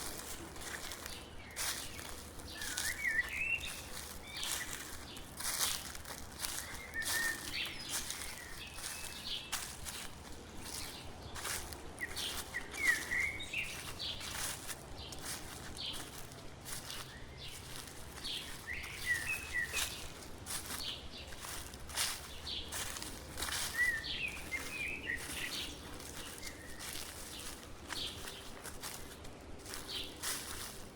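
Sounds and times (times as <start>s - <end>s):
footsteps crunching dry leaves: 0.0s - 30.9s
songbird chirping: 0.0s - 30.9s.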